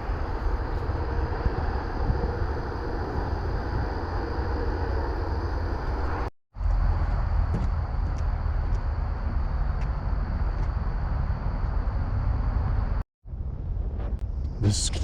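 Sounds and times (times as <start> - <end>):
wind buffeting microphone: 0.0 - 6.3
road traffic noise: 0.0 - 13.0.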